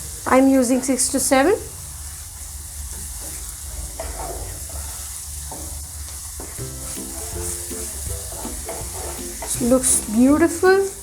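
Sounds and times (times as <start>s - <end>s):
food sizzling in oil: 0.0s - 11.0s
soft background music: 6.6s - 11.0s.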